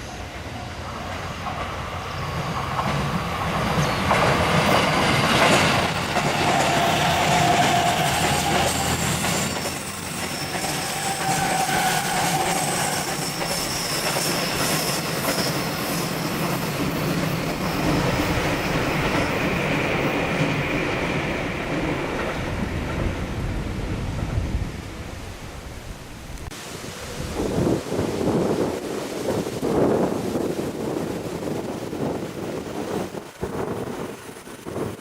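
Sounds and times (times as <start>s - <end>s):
train wheels clattering over rail joints: 2.6s - 23.2s
thin high squealing tones: 6.7s - 16.4s.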